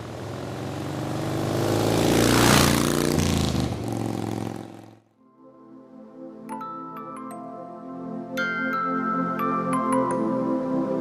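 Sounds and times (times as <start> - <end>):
vehicle engine passing by: 0.0 - 5.1.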